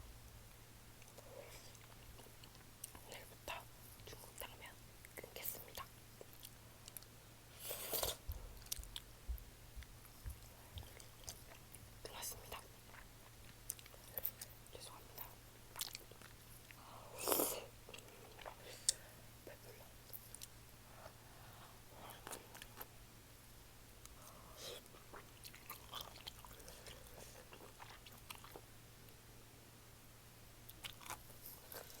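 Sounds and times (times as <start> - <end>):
person chewing food: 5.7 - 9.1, 9.8 - 11.9, 12.8 - 14.5, 15.2 - 19.0, 22.1 - 22.9, 24.0 - 28.7, 30.7 - 32.0
chewing and biting food: 15.7 - 16.8, 24.9 - 28.7, 30.7 - 32.0.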